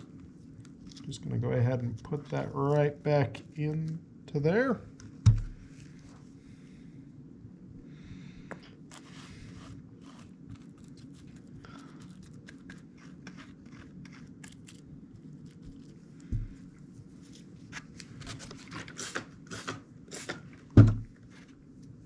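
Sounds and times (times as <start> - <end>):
dull thump: 5.2 - 5.6, 20.8 - 21.1.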